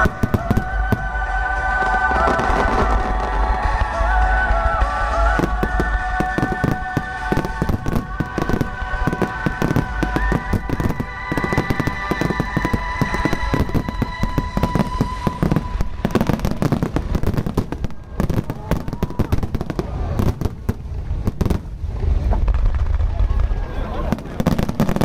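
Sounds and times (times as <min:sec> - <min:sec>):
music with long held notes: 0:00.0 - 0:18.6
fireworks crackling and banging: 0:00.0 - 0:25.0.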